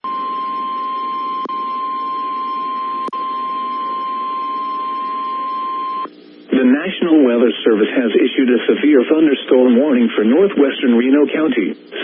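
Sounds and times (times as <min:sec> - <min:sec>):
steady warning tone: 0:00.0 - 0:07.6
faint radio hiss: 0:00.2 - 0:12.0.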